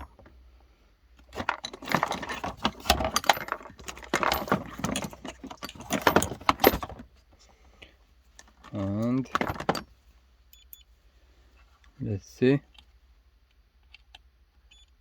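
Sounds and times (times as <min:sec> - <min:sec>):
metal tools rattling and clinking: 0:00.0 - 0:00.3, 0:01.2 - 0:07.1, 0:08.4 - 0:09.9.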